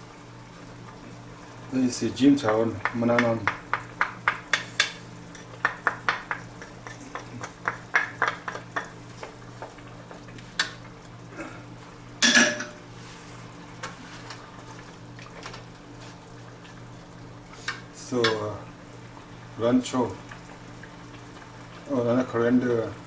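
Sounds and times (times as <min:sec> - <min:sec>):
utensils knocking on cookware: 0:02.4 - 0:10.7, 0:12.2 - 0:12.8
utensils clattering: 0:12.2 - 0:12.8.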